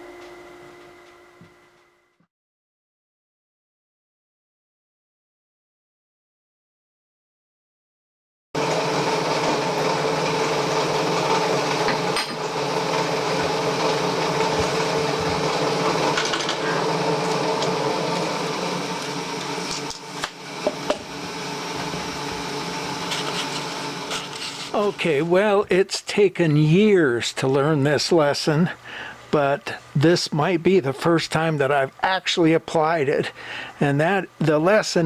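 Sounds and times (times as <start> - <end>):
machine tool humming: 8.6 - 25.4.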